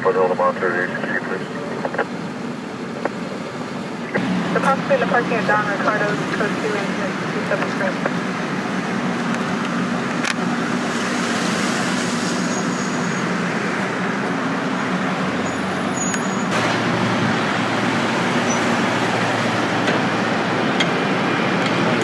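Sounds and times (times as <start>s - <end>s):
car engine and road noise: 0.0s - 22.0s.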